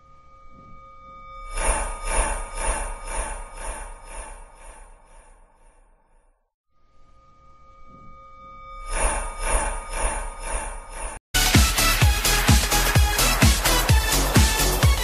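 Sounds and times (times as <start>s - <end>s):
faint steady tone: 0.0s - 4.7s, 6.7s - 10.4s.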